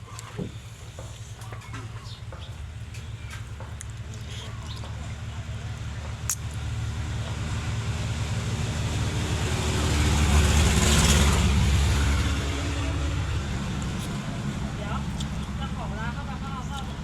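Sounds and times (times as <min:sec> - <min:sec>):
vehicle passing by: 0:04.3 - 0:17.0.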